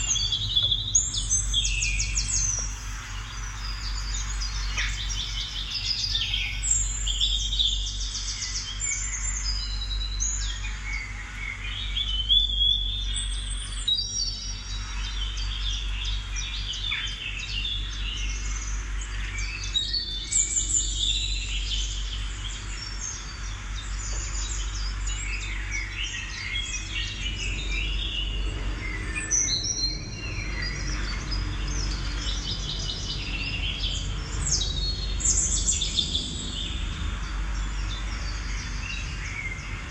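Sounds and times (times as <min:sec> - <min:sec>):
birds chirping and singing: 0:00.0 - 0:39.9
steady low hum: 0:00.0 - 0:39.9.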